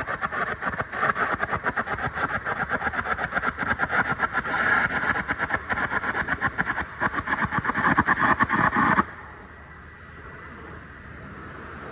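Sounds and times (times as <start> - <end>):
electric welding arc crackling: 0.0 - 9.1.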